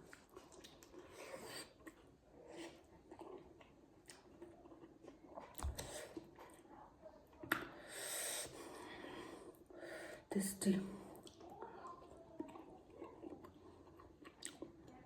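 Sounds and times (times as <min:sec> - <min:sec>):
chewing and mouth clicks: 0:00.0 - 0:06.7, 0:11.1 - 0:15.0.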